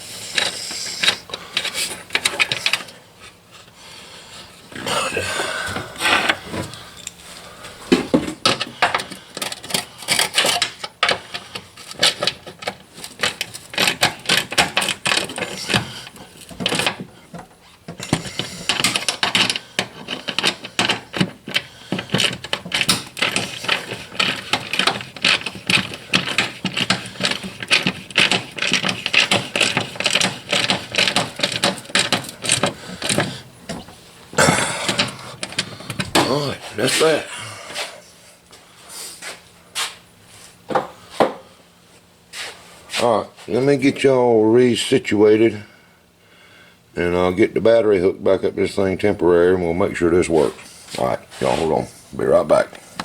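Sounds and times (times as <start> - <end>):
hand ratchet clicking: 18.0 - 33.4.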